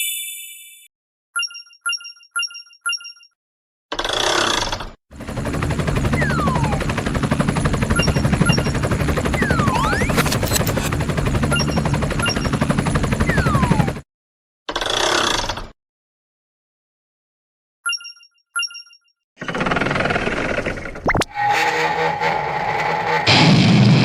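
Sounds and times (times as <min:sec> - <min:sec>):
fast rattling clatter: 0:19.4 - 0:21.0.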